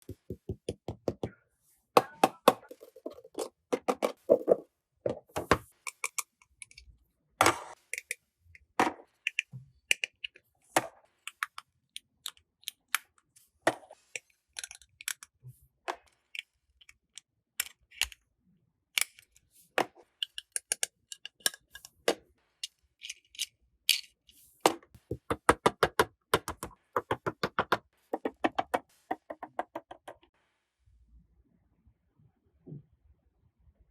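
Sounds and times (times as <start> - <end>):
plastic toy clicking and crackling: 14.5 - 15.4, 20.2 - 21.9.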